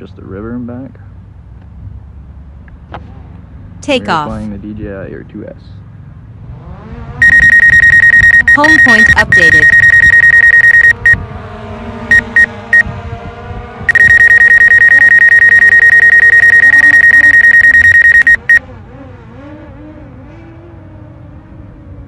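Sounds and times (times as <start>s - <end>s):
drone propellers whining: 7.2s - 11.2s, 12.1s - 12.9s, 13.8s - 18.6s
high electronic warning beeps: 7.2s - 11.2s, 12.1s - 12.9s, 13.9s - 18.6s.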